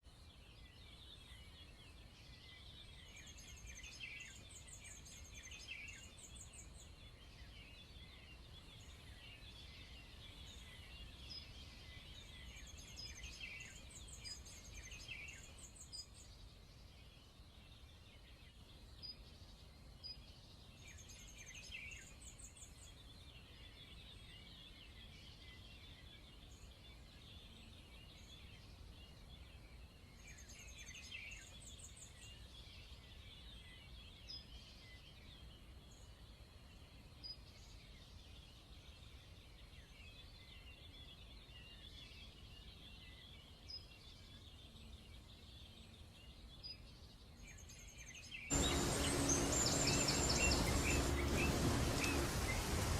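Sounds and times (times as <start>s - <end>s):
small birds chirping: 0.0s - 52.9s
high rapid bird trills: 48.5s - 52.9s
low steady rumble: 48.5s - 52.9s.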